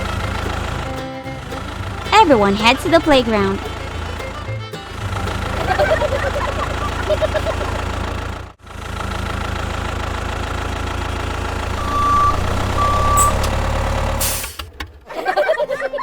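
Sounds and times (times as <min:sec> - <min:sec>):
vehicle engine running: 0:00.0 - 0:15.1
short beeps: 0:11.6 - 0:13.7.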